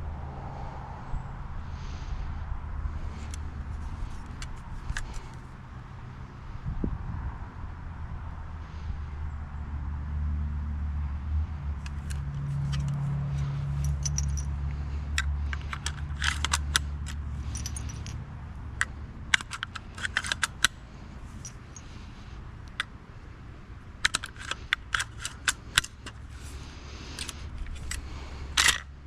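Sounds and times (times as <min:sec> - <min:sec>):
rifle action clicking and rattling: 0:03.1 - 0:05.4, 0:11.8 - 0:23.0, 0:23.8 - 0:29.0.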